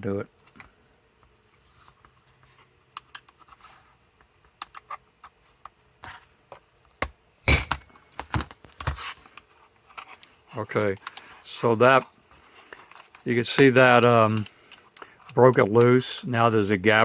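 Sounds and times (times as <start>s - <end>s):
hammer striking metal: 7.5s - 7.8s.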